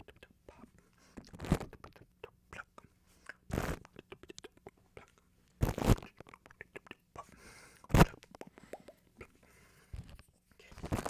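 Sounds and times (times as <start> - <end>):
scratching on microphone: 1.2 - 2.1, 3.5 - 7.0, 7.9 - 8.4, 9.9 - 11.0
tongue and lip clicks: 1.2 - 5.3, 6.0 - 7.3, 7.9 - 9.4.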